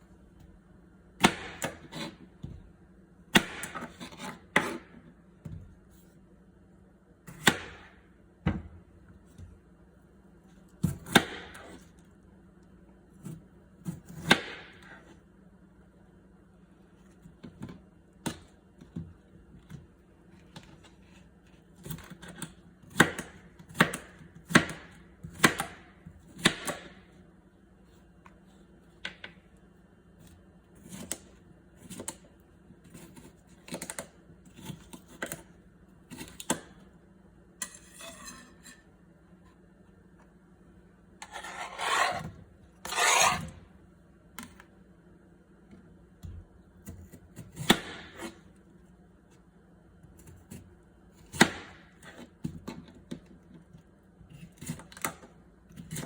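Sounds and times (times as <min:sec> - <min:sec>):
knife chopping on cutting board: 0:01.2 - 0:02.6, 0:03.3 - 0:05.7, 0:07.3 - 0:08.8, 0:10.8 - 0:11.8, 0:13.2 - 0:15.1, 0:21.8 - 0:27.0, 0:46.8 - 0:48.4, 0:51.2 - 0:52.8.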